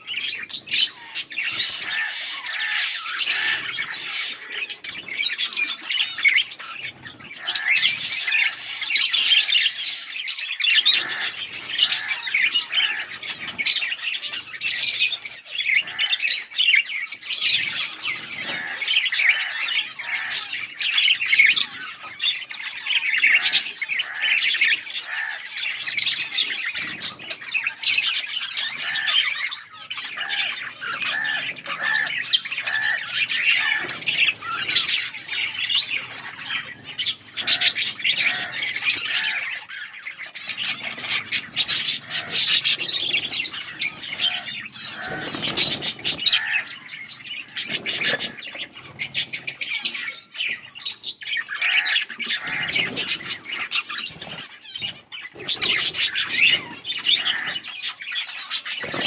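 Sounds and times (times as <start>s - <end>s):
budgerigars chirping and chattering: 0.0s - 59.0s
harsh squawks: 17.6s - 59.0s.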